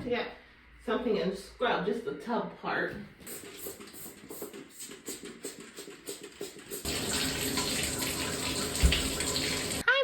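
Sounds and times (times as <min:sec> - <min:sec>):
tap water running into tub: 0:03.3 - 0:09.9
scrubbing a bathtub: 0:04.8 - 0:09.8.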